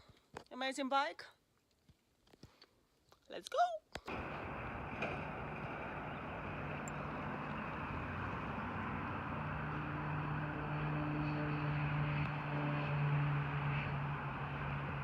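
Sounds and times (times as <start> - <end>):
low engine hum: 4.1 - 15.0
vehicle passing by: 4.1 - 15.0.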